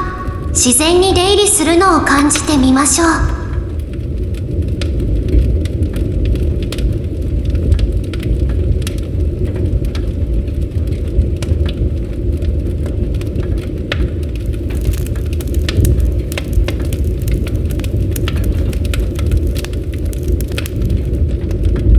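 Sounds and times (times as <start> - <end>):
flames rushing: 0.0 - 21.9
wood crackling: 0.0 - 21.9.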